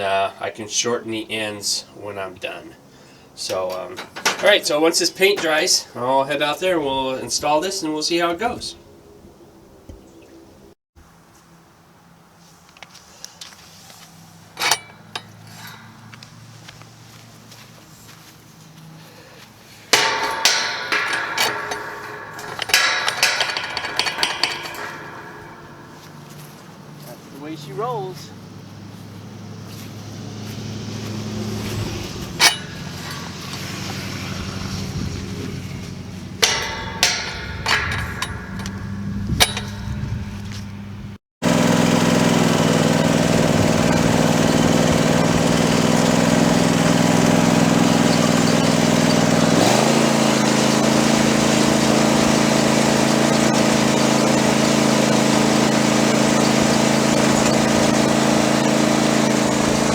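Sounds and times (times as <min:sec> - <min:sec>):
sharp knocks: 0:03.8 - 0:05.8, 0:19.9 - 0:27.9, 0:30.6 - 0:40.8
small engine running: 0:13.4 - 0:40.6, 0:41.4 - 0:59.9.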